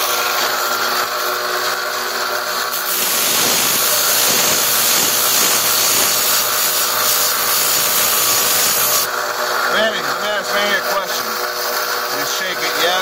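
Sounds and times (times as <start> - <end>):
electric grinder grinding steel blade: 0.0 - 13.0.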